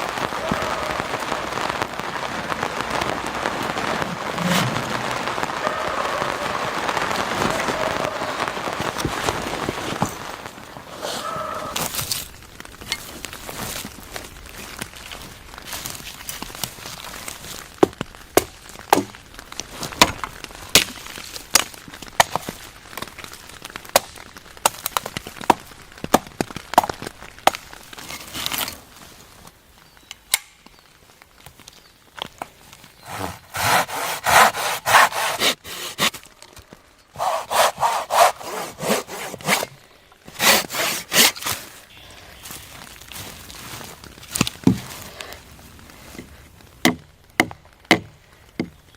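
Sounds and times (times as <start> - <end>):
hand saw cutting wood: 33.0 - 36.2, 37.2 - 41.6.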